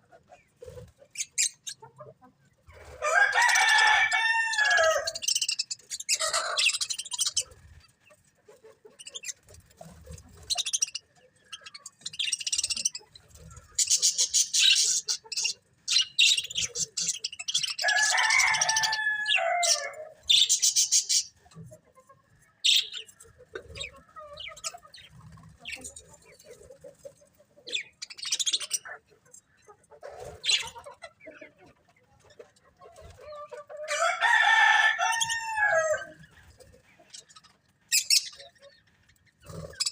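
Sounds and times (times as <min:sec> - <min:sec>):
budgerigars chirping: 0:04.6 - 0:07.6, 0:08.9 - 0:21.4, 0:22.6 - 0:26.6, 0:27.7 - 0:29.0, 0:30.1 - 0:31.4, 0:37.1 - 0:38.8, 0:39.4 - 0:39.9.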